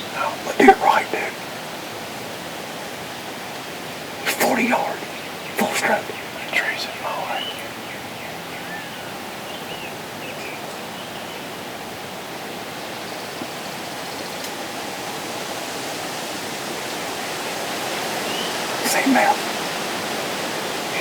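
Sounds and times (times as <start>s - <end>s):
wind: 0.0s - 21.0s
faint bird chirps: 4.5s - 11.5s.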